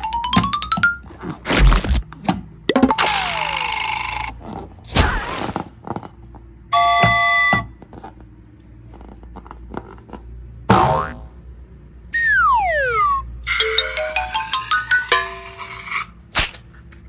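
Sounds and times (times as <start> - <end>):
swish with falling tone: 12.2 - 13.7.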